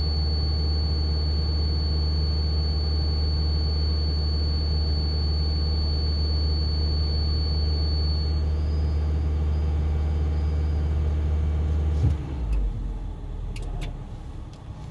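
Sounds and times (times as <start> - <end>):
thin high whine: 0.0 - 10.8
car engine low hum: 6.2 - 14.9.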